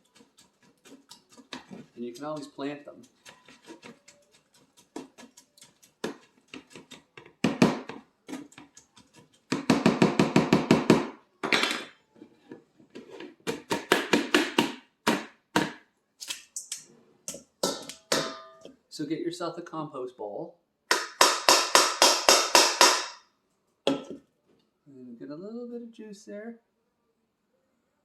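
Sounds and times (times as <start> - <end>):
spoon scraping against a strainer: 0.0 - 9.6.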